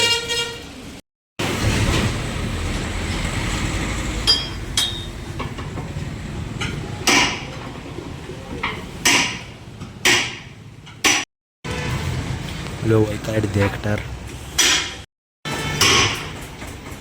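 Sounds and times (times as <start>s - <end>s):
hammer clanking on metal wheel: 4.2s - 6.0s, 6.6s - 7.9s, 8.5s - 11.2s, 14.6s - 17.0s.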